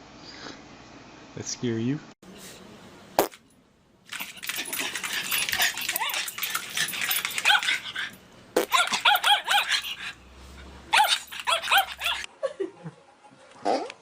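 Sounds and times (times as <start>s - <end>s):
dog whining: 4.6s - 10.2s, 10.9s - 12.3s
dog yapping: 4.6s - 10.2s, 10.9s - 12.3s.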